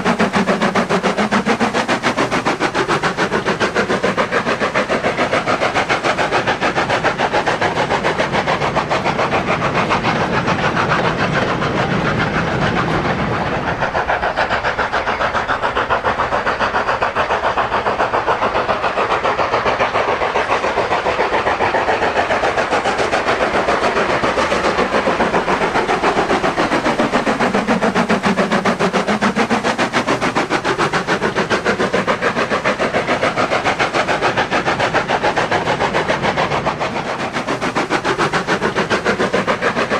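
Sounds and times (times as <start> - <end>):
model train wheels clicking: 0.0 - 39.9.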